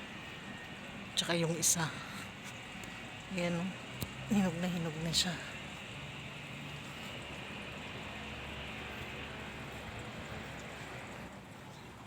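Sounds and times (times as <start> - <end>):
low engine rumble: 0.0 - 12.0.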